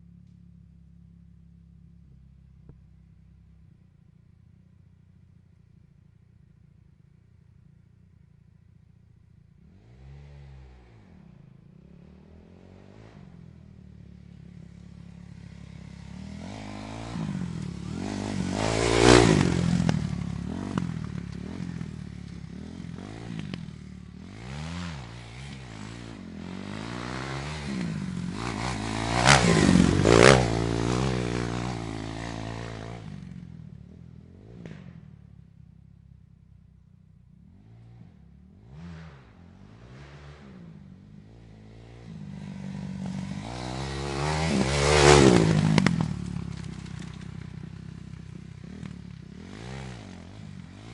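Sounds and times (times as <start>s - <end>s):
dirt bike engine revving: 15.3s - 33.4s, 37.5s - 50.9s.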